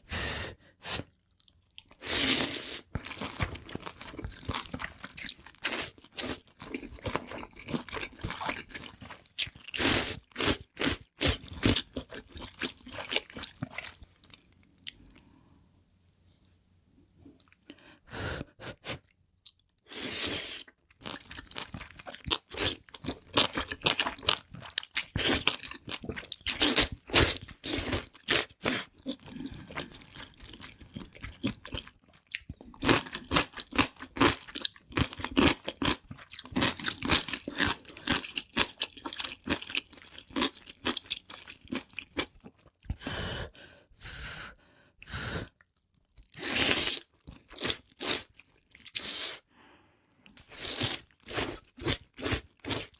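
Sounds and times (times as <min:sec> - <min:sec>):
crisp food crunching: 0:02.8 - 0:10.4.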